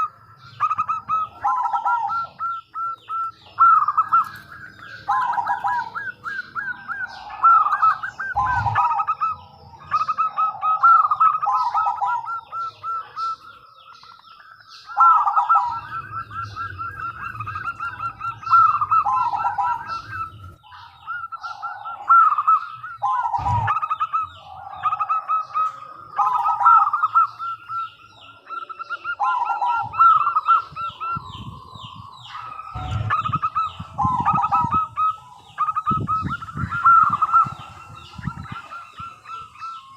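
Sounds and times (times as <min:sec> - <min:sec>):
doves cooing: 0:00.0 - 0:39.9.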